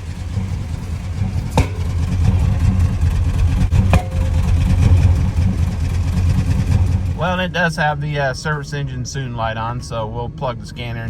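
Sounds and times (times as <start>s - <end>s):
exhaust backfire bang: 0.0s - 7.5s
engine rumbling: 0.0s - 11.0s.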